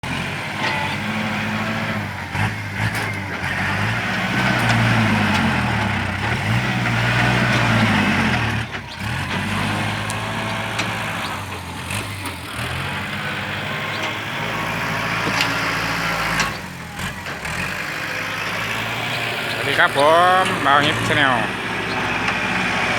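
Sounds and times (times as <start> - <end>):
machine engine running: 15.7 - 22.9.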